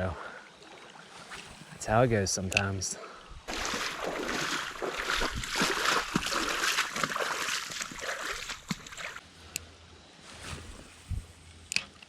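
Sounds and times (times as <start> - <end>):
water splashing and rushing: 3.4 - 9.2.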